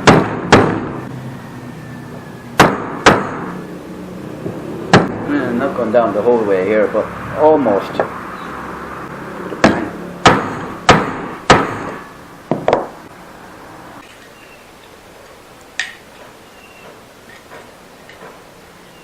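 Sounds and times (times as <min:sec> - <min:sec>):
hammer striking wood: 0:00.0 - 0:01.0, 0:02.6 - 0:03.5, 0:04.5 - 0:05.2, 0:09.6 - 0:13.0.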